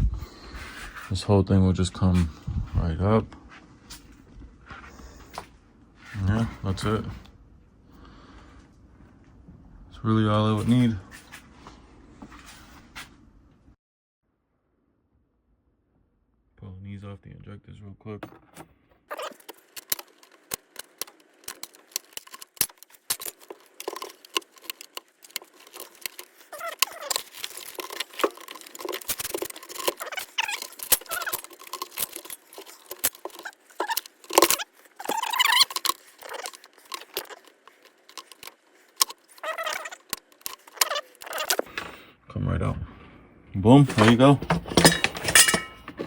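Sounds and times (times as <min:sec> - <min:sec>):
clicks and rattles of engine parts: 0:19.2 - 0:41.9, 0:43.9 - 0:46.0.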